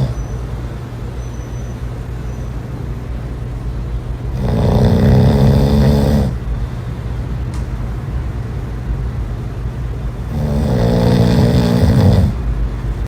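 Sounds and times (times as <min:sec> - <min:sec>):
steady low hum: 0:00.0 - 0:13.0
person snoring: 0:04.3 - 0:06.4, 0:10.3 - 0:12.4.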